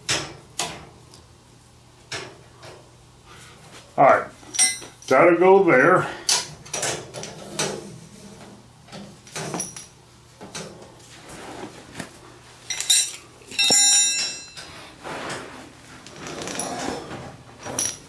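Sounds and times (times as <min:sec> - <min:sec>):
knocks and clinks of handling: 0:04.5 - 0:05.1, 0:12.6 - 0:14.7, 0:17.6 - 0:18.0.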